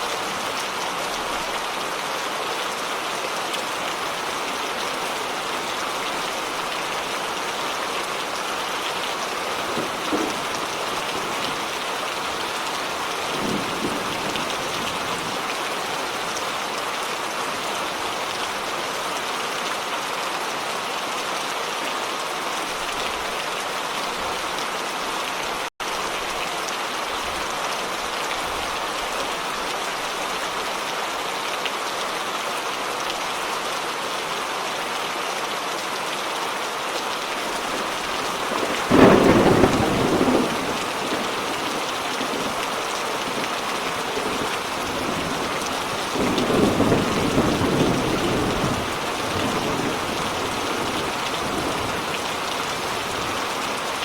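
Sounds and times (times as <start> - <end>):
steady rain: 0.0 - 54.0
rolling thunder rumble: 9.3 - 12.5, 13.2 - 15.4, 37.5 - 53.8
thunder clap: 9.4 - 12.4, 13.2 - 15.4, 37.5 - 53.5.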